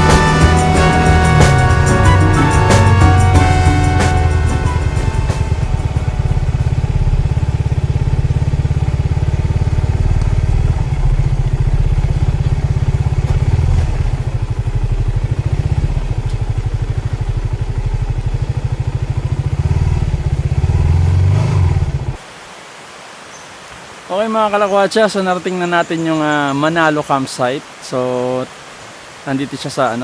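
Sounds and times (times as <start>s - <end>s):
motorcycle engine running: 0.0s - 22.2s.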